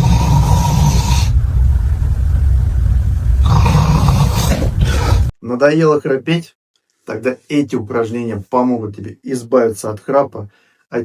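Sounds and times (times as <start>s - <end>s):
person snoring loudly: 0.0s - 1.4s, 3.4s - 5.3s.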